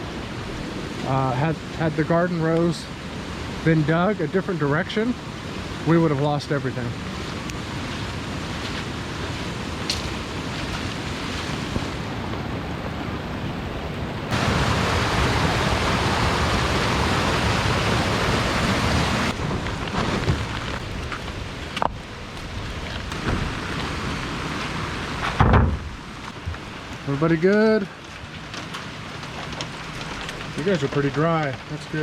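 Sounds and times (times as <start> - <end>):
heavy rain falling: 0.0 - 32.0.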